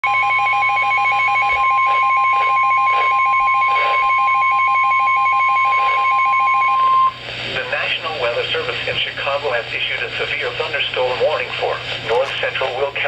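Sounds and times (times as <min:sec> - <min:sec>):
steady warning tone: 0:00.0 - 0:08.4
fast electronic warble beeping: 0:00.1 - 0:07.1.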